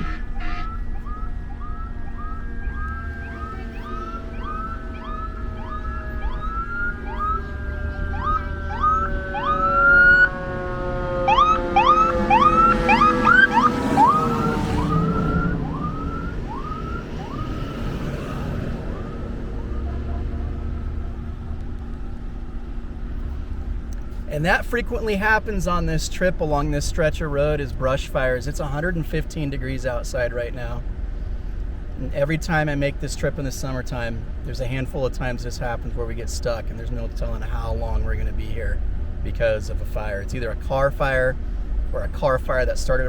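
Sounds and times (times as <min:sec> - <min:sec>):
emergency sirens yelping: 0:00.0 - 0:22.8
low rumble of vehicles: 0:00.0 - 0:43.0.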